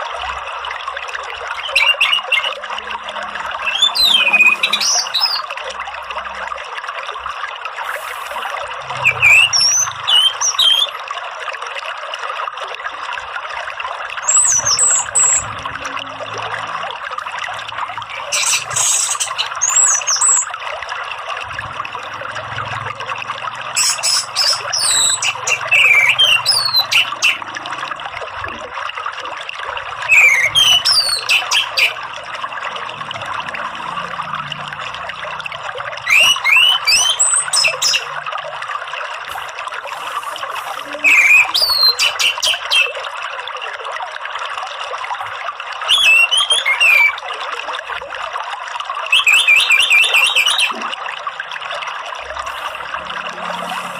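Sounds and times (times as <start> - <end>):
running water: 0.0 - 53.9
thrush whistled song: 1.5 - 2.6, 3.6 - 5.6, 8.2 - 11.0, 14.2 - 15.6, 18.1 - 20.6, 23.8 - 27.5, 30.0 - 32.0, 36.0 - 38.2, 40.9 - 43.0, 45.9 - 47.2, 49.1 - 50.8.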